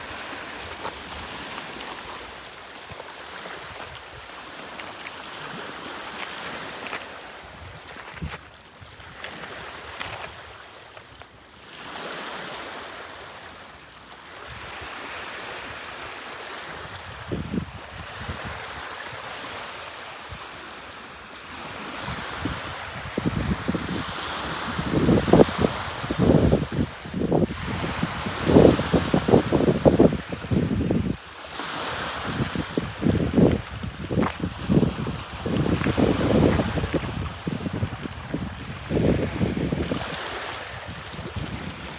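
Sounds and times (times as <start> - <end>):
ocean surf washing: 0.0 - 7.5, 18.2 - 41.9
wind buffeting microphone: 22.0 - 31.2, 32.0 - 41.9.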